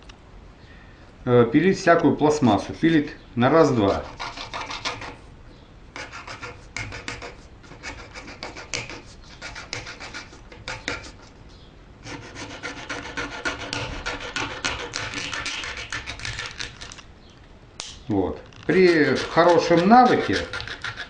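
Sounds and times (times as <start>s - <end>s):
saw cutting through plastic: 6.0s - 11.2s, 12.0s - 17.0s, 18.7s - 21.0s.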